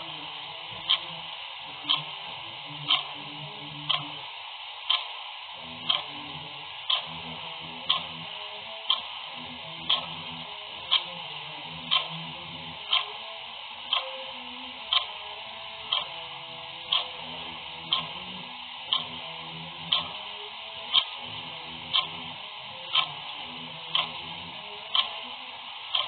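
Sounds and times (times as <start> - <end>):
clock ticking: 0.0 - 4.2, 4.8 - 26.0
background hiss: 0.0 - 26.0.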